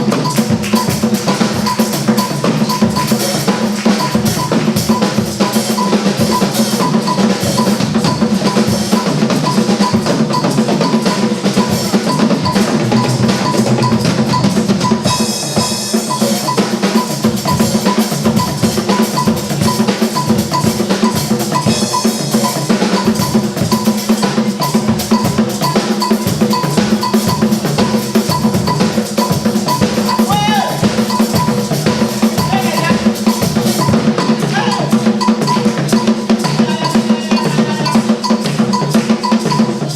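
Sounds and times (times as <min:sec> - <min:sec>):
drum percussion music: 0:00.0 - 0:39.9.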